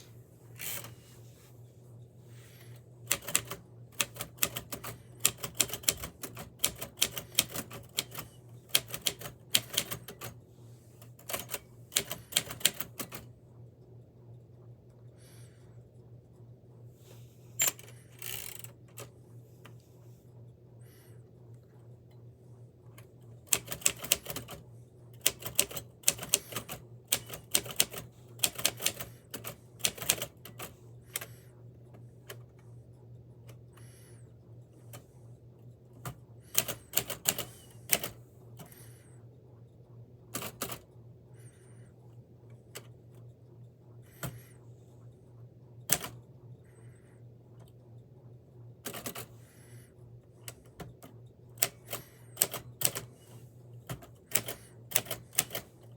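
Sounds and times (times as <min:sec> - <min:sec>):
steady low hum: 0:00.0 - 0:55.9
typewriter keys typing: 0:03.1 - 0:10.4, 0:11.1 - 0:13.3, 0:17.6 - 0:19.1, 0:23.4 - 0:24.6, 0:25.2 - 0:31.4, 0:36.0 - 0:38.9, 0:40.3 - 0:40.8, 0:45.8 - 0:46.2, 0:48.8 - 0:49.3, 0:50.4 - 0:53.2, 0:53.8 - 0:55.8.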